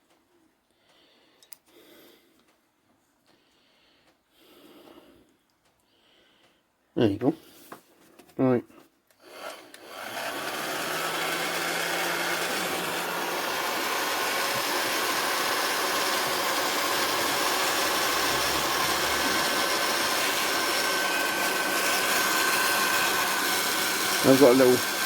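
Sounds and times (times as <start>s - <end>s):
heat gun fan blowing: 9.3s - 25.0s.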